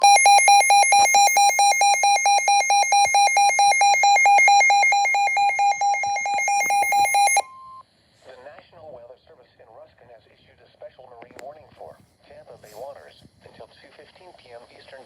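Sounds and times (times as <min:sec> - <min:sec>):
rapid electronic alarm beeps: 0:00.0 - 0:07.8.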